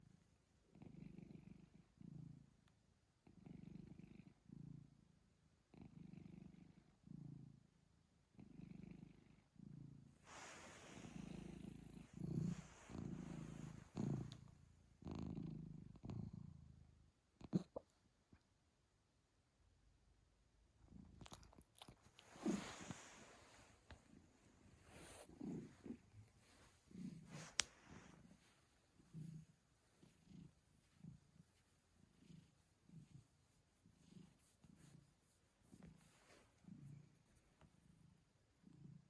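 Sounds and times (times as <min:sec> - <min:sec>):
cat purring: 0:00.0 - 0:18.5, 0:19.9 - 0:39.0
rustling: 0:21.3 - 0:36.6.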